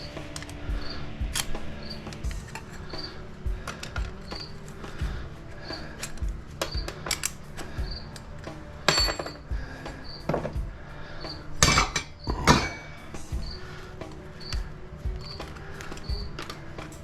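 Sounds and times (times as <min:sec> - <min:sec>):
scrap metal clinking: 0:06.0 - 0:09.5, 0:11.6 - 0:13.0.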